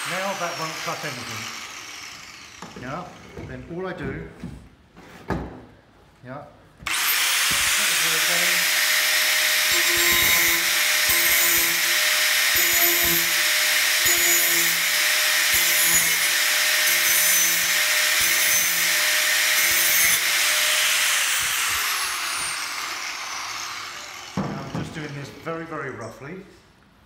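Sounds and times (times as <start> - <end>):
angle grinder cutting metal: 0.0 - 3.4, 6.9 - 25.4
grinder disc spinning down: 0.0 - 3.4, 6.9 - 25.3.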